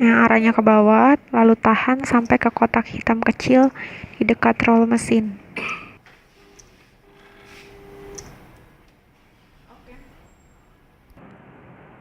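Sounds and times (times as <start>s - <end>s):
cutting machine motor whine: 6.3s - 8.9s.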